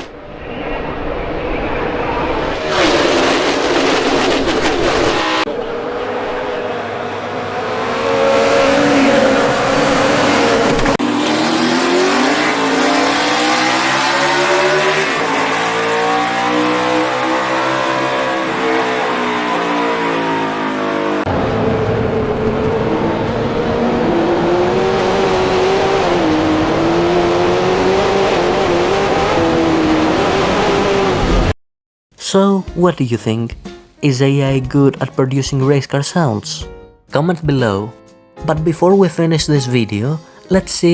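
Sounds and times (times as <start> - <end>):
race car engine: 0.0 - 31.6.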